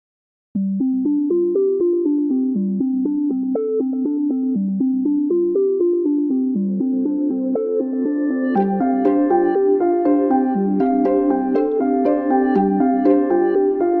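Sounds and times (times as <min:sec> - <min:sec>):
synthesizer playing fast repeating notes: 0:06.8 - 0:14.0.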